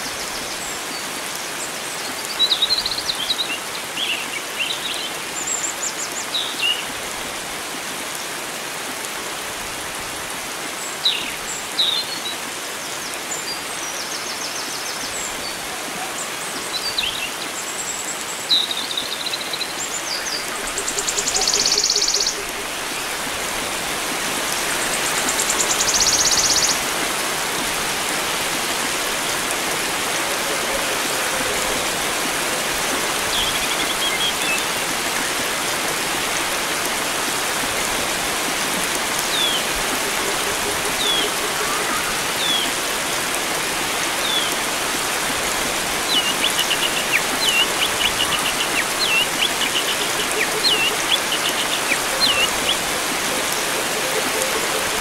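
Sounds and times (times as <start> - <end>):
flowing water rushing: 0.0 - 55.0.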